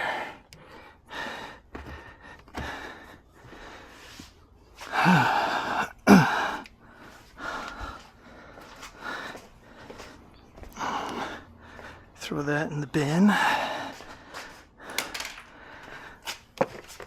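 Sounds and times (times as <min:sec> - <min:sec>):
man breathing hard: 0:00.0 - 0:12.3, 0:13.0 - 0:16.6.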